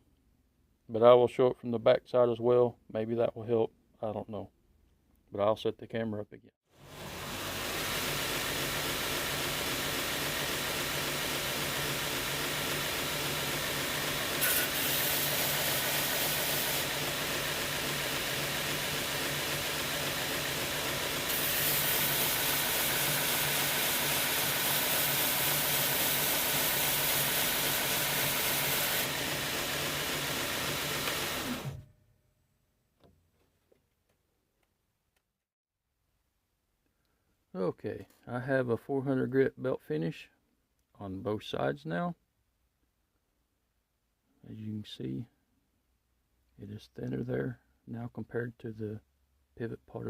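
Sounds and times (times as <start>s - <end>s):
belt grinder grinding steel: 7.2s - 31.8s.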